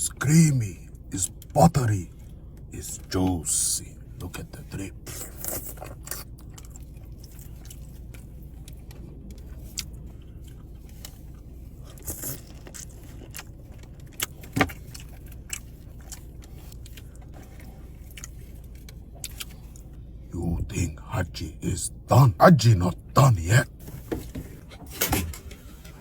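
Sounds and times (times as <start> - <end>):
steady low hum: 0.0 - 26.0
biting and chewing: 5.0 - 20.1.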